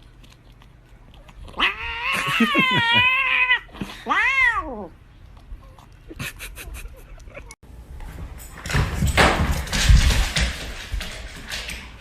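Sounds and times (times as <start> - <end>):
cat yowling: 1.5 - 4.9.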